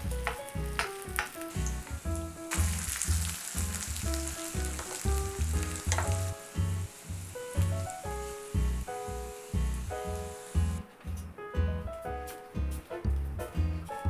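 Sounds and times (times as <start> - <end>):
potato sizzling in hot oil: 0.0 - 10.8
background music: 0.0 - 14.0.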